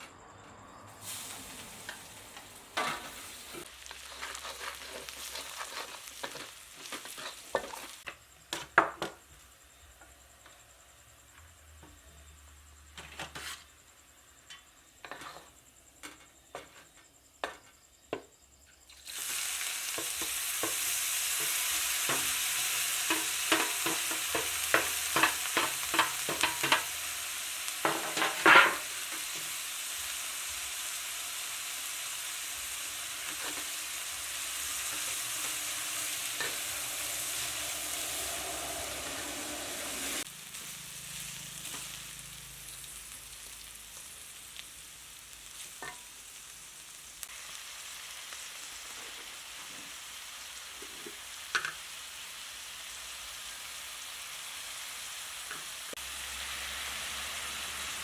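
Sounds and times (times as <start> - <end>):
food sizzling in hot oil: 0.8 - 11.3, 18.8 - 58.0
spatula scraping pan: 2.8 - 8.8, 13.0 - 13.8, 15.0 - 17.0, 34.9 - 40.3.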